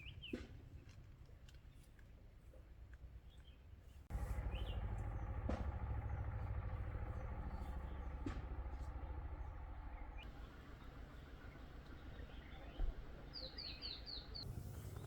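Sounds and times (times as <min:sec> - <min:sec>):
engine low rumble: 0:04.0 - 0:15.0.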